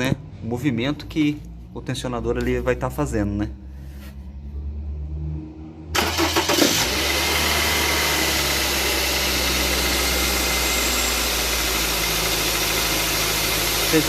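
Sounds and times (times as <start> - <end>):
car engine idling: 5.9 - 14.0
car starter motor cranking: 6.0 - 9.7.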